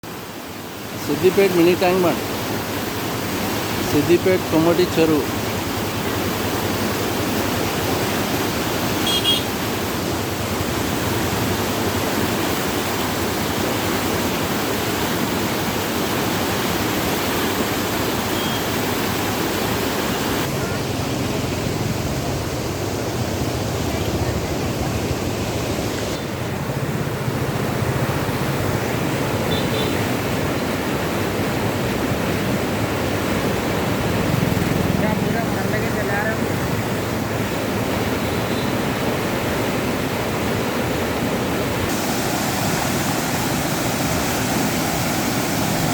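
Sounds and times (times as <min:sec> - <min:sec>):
water rushing: 0:00.0 - 0:45.9.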